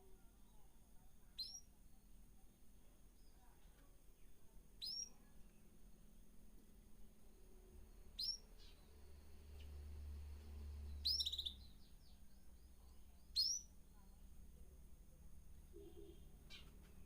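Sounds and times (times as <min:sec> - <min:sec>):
caged birds chirping: 0:01.2 - 0:01.8, 0:03.2 - 0:05.8, 0:07.9 - 0:14.4, 0:15.2 - 0:17.0.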